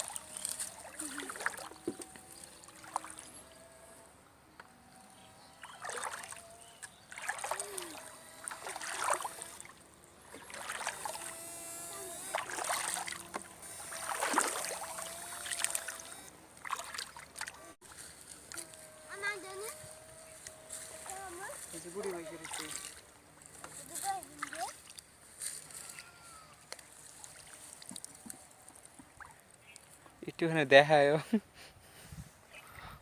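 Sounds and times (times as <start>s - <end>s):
water swishing and splashing: 0.0s - 3.7s, 5.6s - 18.6s, 21.0s - 23.1s, 24.0s - 25.1s, 27.0s - 30.0s.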